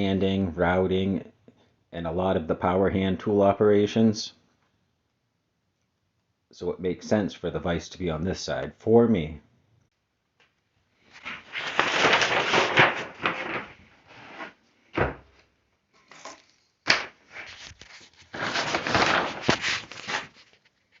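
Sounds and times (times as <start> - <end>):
parts scraping and sliding: 15.9 - 21.0.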